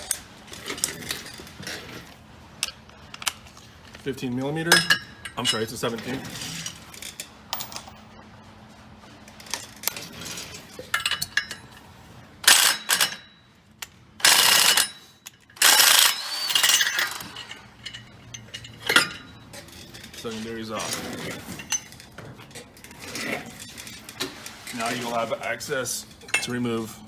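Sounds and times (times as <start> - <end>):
ratchet clicking: 14.2 - 15.0, 15.6 - 18.0
metal clinks: 14.2 - 20.3.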